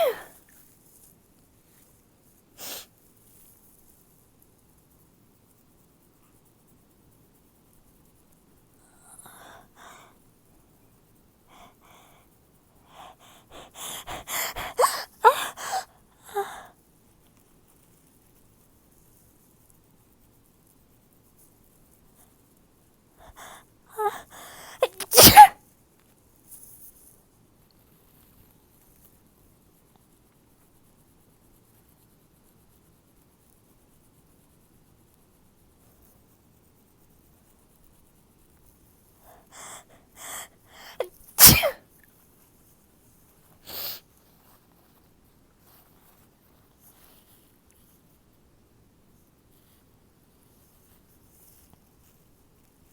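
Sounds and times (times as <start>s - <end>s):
woman gasping breaths: 0.0s - 0.4s, 9.0s - 10.2s, 11.6s - 16.7s, 23.2s - 25.6s, 39.3s - 41.8s
woman sneezing: 0.0s - 0.4s, 13.2s - 16.6s, 23.3s - 25.6s, 39.6s - 41.8s.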